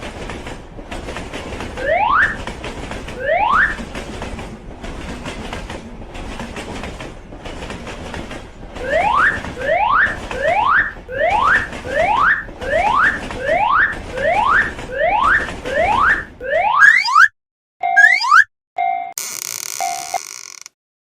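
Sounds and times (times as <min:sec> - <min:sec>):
train rattling past: 0:00.0 - 0:16.4.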